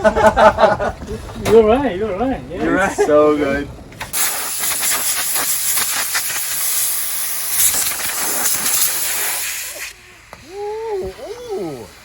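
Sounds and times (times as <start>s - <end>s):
loud steady hissing: 4.0s - 12.0s.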